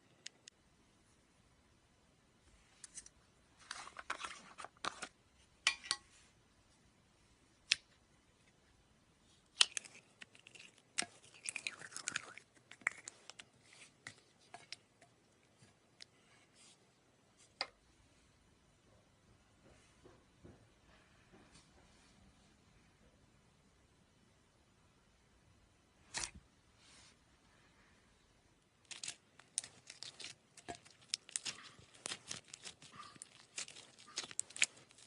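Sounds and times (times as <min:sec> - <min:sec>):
slime crackling and popping: 0:28.8 - 0:35.0.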